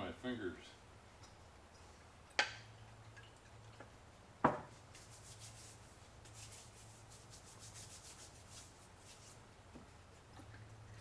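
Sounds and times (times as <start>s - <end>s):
rag rubbing a surface: 4.9s - 9.4s.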